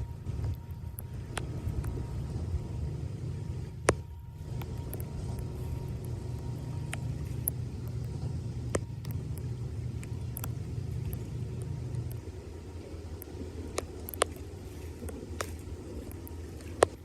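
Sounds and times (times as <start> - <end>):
steady low rumble: 0.0 - 17.0
sharp clicks: 3.7 - 17.0.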